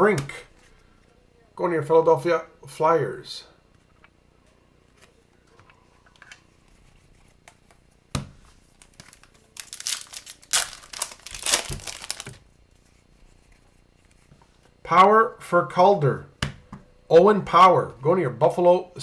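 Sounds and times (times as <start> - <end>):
wrapper tearing and crinkling: 8.7 - 12.4.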